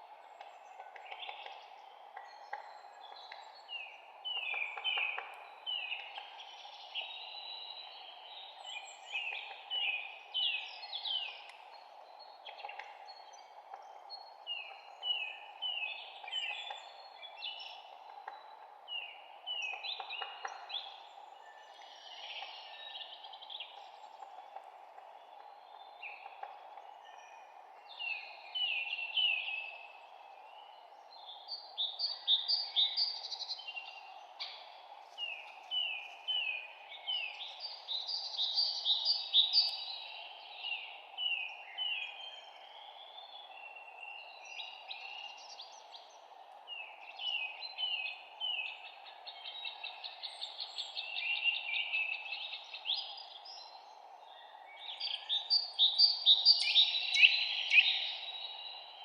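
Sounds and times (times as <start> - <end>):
songbirds chirping: 0.0 - 59.0
steady background hiss: 0.0 - 59.0.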